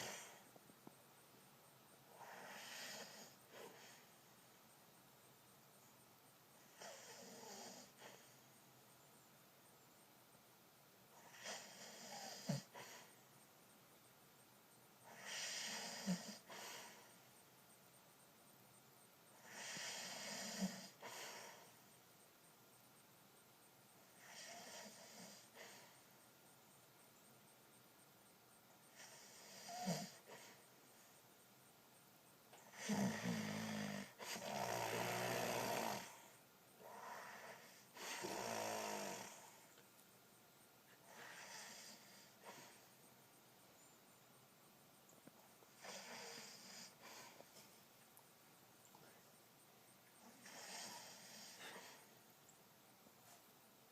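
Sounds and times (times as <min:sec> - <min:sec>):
man snoring: 0:02.2 - 0:03.4, 0:06.8 - 0:08.0, 0:11.2 - 0:12.8, 0:15.1 - 0:16.6, 0:19.4 - 0:21.1, 0:24.2 - 0:25.6, 0:29.0 - 0:30.3, 0:32.7 - 0:39.6, 0:41.1 - 0:42.5, 0:50.2 - 0:51.9.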